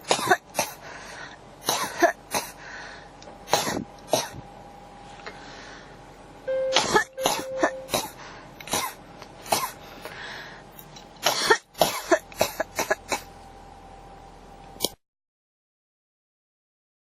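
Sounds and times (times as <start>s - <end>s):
person coughing: 0.0s - 0.8s, 1.6s - 2.6s, 3.5s - 4.4s, 6.7s - 9.8s, 11.2s - 13.2s
person drawing breath: 0.7s - 1.4s, 2.4s - 3.2s, 5.2s - 6.0s, 8.0s - 8.6s, 9.8s - 10.7s.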